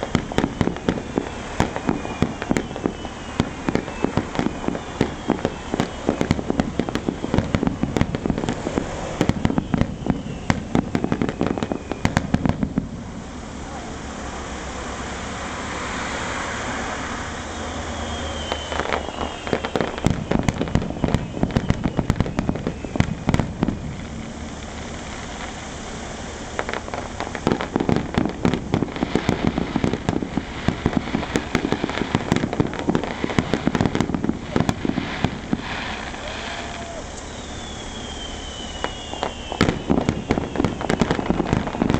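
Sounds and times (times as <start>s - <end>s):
high thin whistle: 0.0s - 7.6s, 9.1s - 12.4s, 16.0s - 23.1s, 35.7s - 41.9s
fireworks bursting and crackling: 0.0s - 41.9s.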